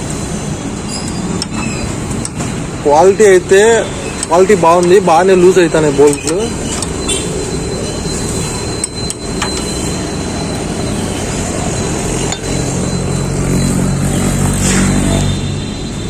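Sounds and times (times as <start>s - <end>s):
vehicle noise: 0.0s - 16.0s
spanner clinking on metal nut: 4.1s - 5.1s, 6.0s - 7.2s, 8.8s - 9.8s.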